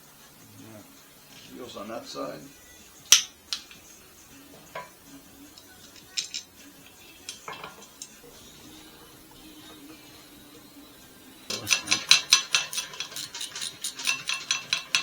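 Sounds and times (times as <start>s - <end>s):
metal parts clinking: 5.8s - 6.5s, 11.5s - 15.0s
sharp metallic clank: 11.5s - 15.0s.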